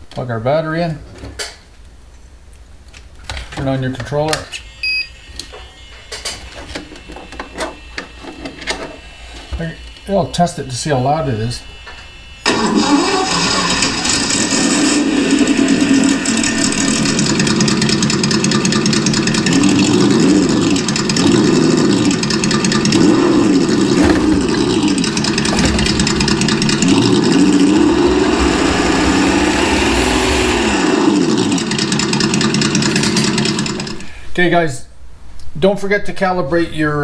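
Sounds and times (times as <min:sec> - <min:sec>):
simulated engine idling and revving: 0:14.3 - 0:34.0.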